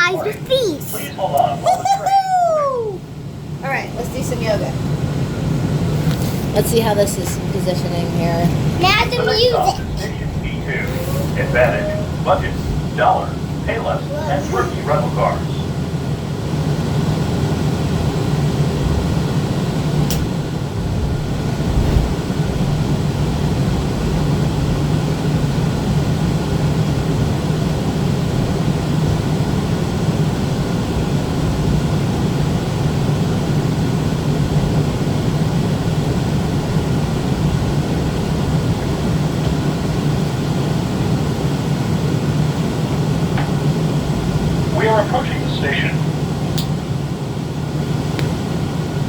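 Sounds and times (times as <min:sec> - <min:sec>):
train hum and rumble: 0:00.0 - 0:49.0
sharp click: 0:20.1 - 0:20.3.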